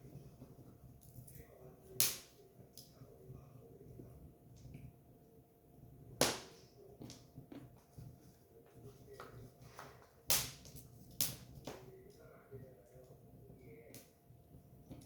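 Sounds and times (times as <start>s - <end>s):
firewood crackling: 0.0s - 15.0s
loud sharp pops: 6.2s - 6.6s, 10.3s - 11.8s.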